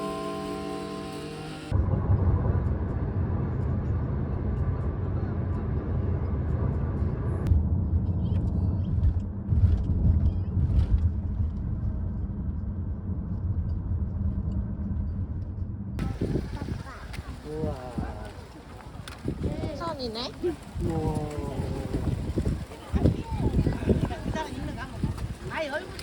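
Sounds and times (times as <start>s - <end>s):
vehicle rumble: 0.0s - 26.0s.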